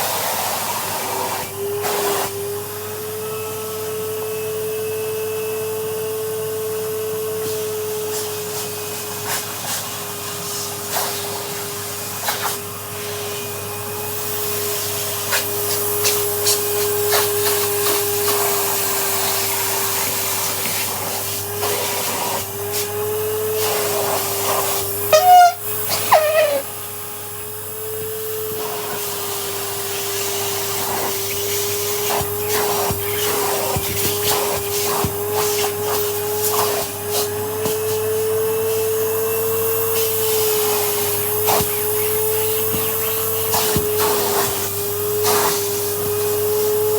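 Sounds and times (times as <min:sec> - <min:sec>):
vacuum cleaner running: 0:00.0 - 0:46.9
squeal sliding in pitch: 0:25.1 - 0:26.7.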